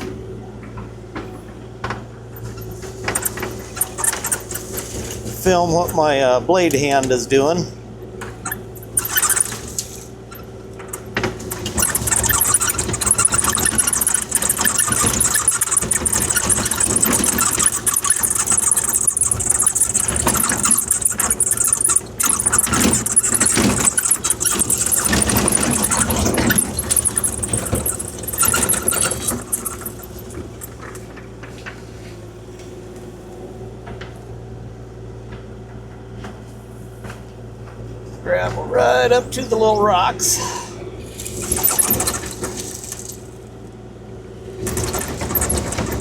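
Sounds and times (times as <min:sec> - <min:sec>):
excavator diesel engine running: 0:08.2 - 0:31.0
blade scraping gravel: 0:41.0 - 0:43.4.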